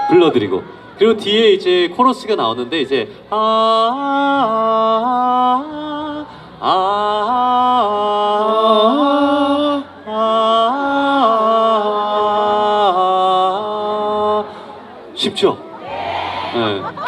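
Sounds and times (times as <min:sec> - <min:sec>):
man singing wordless melody: 0:03.3 - 0:14.6.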